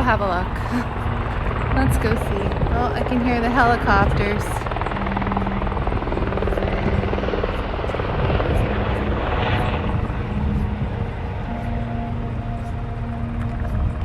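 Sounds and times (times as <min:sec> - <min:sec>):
helicopter rotor and engine drone: 0:00.0 - 0:14.0.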